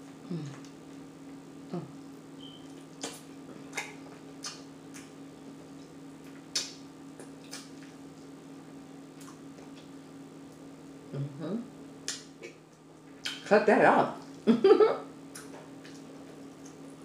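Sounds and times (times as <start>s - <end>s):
steady low hum: 0.0s - 17.0s
chewing and lip-smacking: 2.5s - 8.4s, 9.2s - 10.6s, 15.3s - 17.0s.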